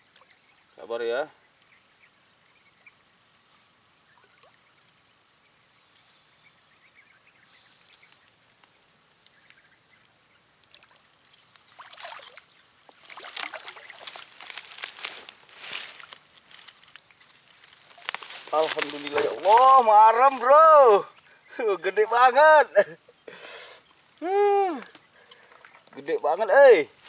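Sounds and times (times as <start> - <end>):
insects shrilling: 0.0 - 27.0
bursts of rustling: 13.0 - 20.5.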